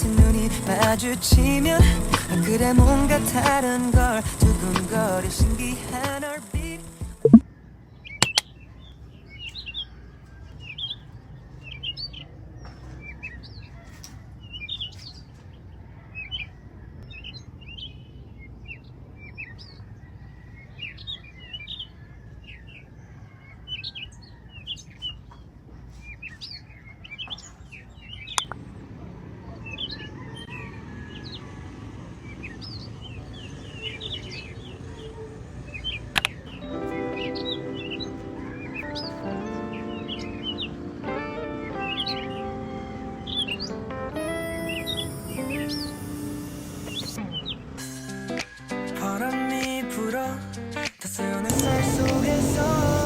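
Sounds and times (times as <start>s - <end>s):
sharp clicks: 0.0s - 7.4s, 28.4s - 28.6s
birds chirping: 0.0s - 50.4s, 51.4s - 53.0s.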